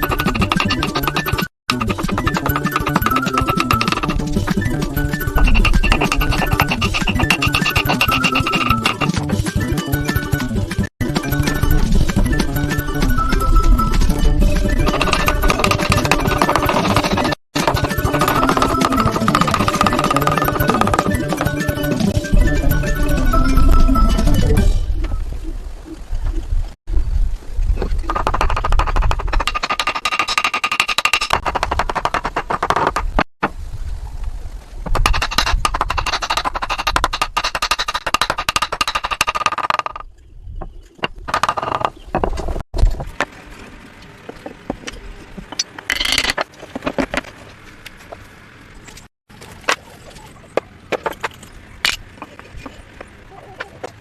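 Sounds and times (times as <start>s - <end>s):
hand tool rasping wood: 0.0s - 9.2s, 14.8s - 21.9s, 28.0s - 33.3s, 34.9s - 40.0s.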